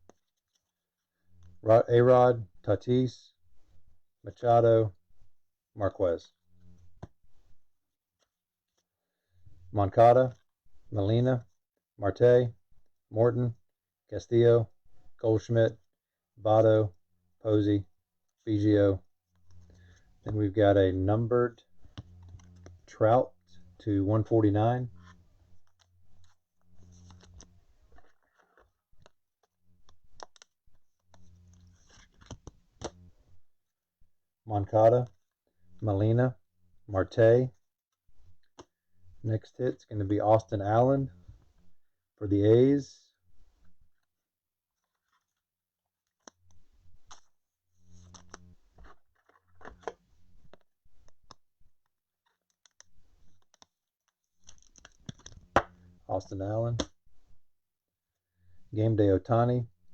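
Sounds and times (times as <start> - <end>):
cards and plastic packaging rustling: 48.0 - 51.4, 52.4 - 55.7
trading cards clicking and rustling: 54.4 - 55.8.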